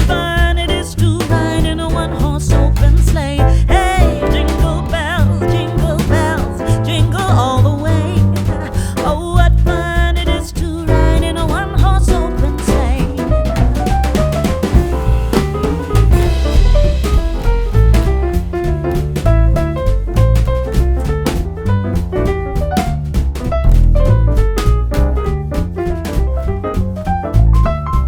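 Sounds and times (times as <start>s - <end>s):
song with singing voice: 0.7s - 8.2s.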